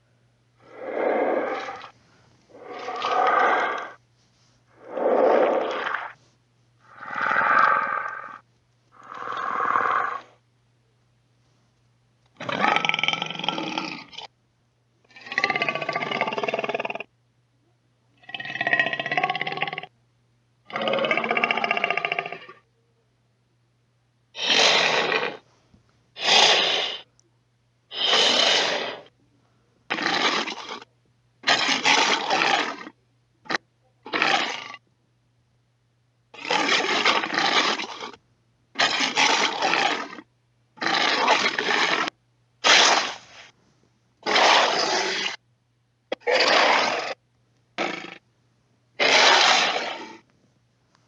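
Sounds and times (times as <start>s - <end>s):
faint steady hum: 0.0s - 51.0s
dinosaur roars and growls: 0.6s - 1.9s, 2.5s - 4.0s, 4.8s - 6.2s, 6.9s - 8.4s, 9.0s - 10.3s, 44.2s - 45.4s, 46.1s - 47.2s, 49.0s - 50.2s.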